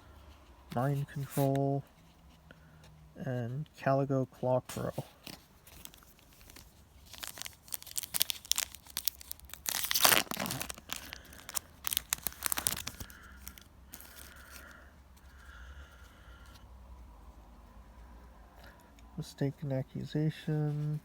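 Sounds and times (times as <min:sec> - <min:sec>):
wrapper crinkling and tearing: 0:05.6 - 0:14.8.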